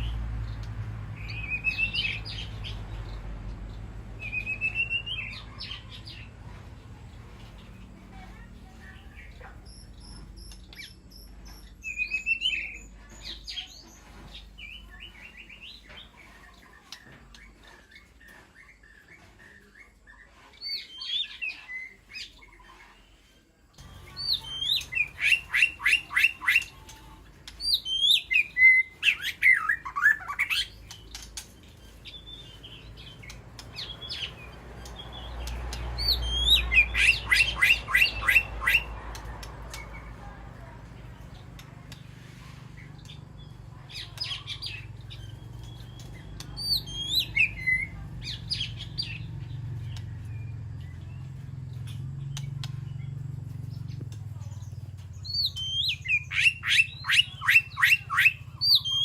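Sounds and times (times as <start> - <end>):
bird singing whistled phrases: 1.2 - 2.4, 4.2 - 5.5, 9.6 - 13.5, 24.0 - 26.9, 27.6 - 31.1, 36.0 - 38.9, 43.9 - 49.2, 55.2 - 59.0.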